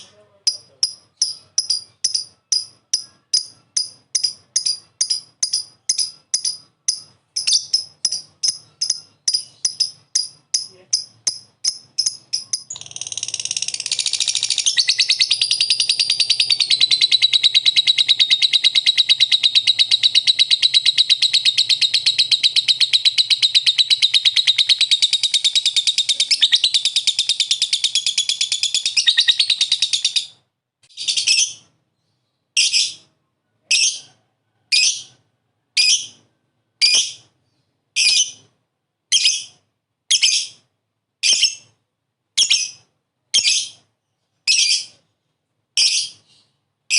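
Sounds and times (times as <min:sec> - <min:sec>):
bird chattering trill: 0:00.0 - 0:30.4.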